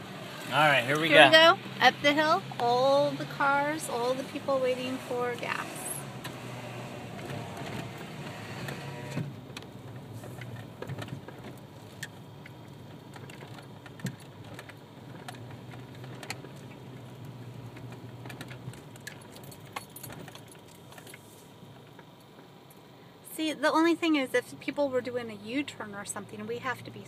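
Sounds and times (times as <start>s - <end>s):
car engine and road hum: 0.0s - 27.0s
light clicks and rattles: 9.5s - 22.8s.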